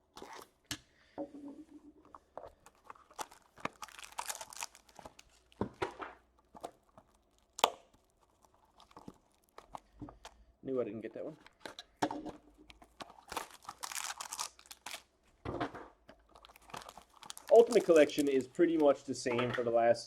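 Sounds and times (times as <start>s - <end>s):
wrapper crinkling: 2.1s - 10.5s, 11.2s - 15.4s, 16.0s - 19.1s
card pack tearing: 2.6s - 9.9s, 12.8s - 15.1s, 16.3s - 19.0s.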